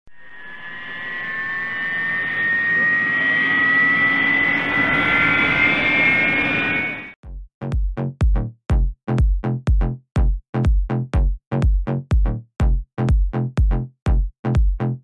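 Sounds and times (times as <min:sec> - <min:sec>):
model airplane motor whine: 0:00.3 - 0:07.2
electronic music beats: 0:07.2 - 0:15.0.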